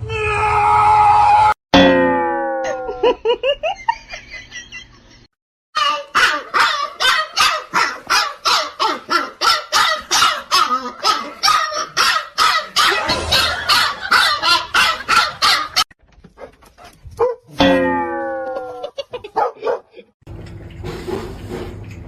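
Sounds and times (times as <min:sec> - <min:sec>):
dog barking: 0:06.1 - 0:15.8, 0:17.2 - 0:17.5, 0:19.4 - 0:19.9.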